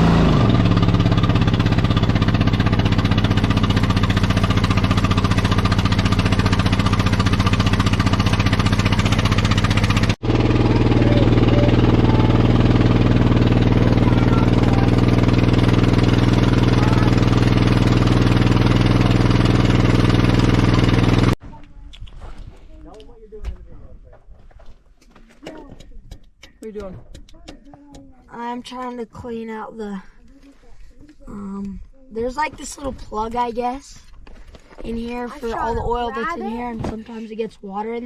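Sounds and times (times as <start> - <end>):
engine idling: 0.0 - 21.4.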